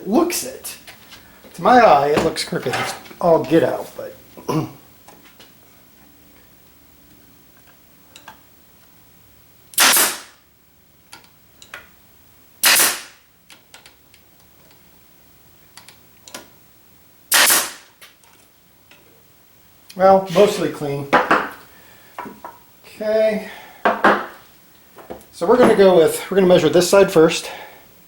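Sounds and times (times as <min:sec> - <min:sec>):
nail gun firing: 0:09.8 - 0:10.4, 0:12.6 - 0:13.2, 0:17.3 - 0:17.9.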